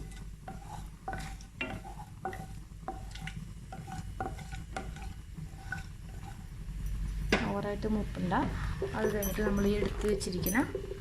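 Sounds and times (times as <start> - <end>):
faint sizzle: 0.0 - 11.0
spoon knocking against pan: 0.5 - 3.1.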